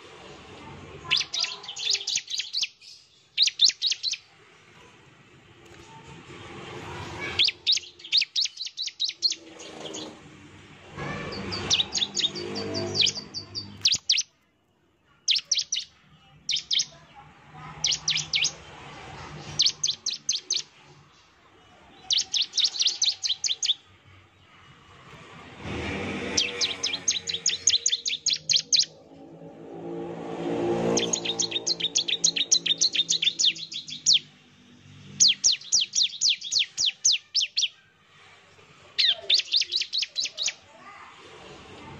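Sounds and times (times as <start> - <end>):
bird singing fast chipping notes: 1.0 - 4.3, 7.2 - 10.2, 11.0 - 14.4, 15.2 - 17.0, 17.8 - 23.9, 25.6 - 29.3, 30.2 - 37.8, 39.0 - 40.6.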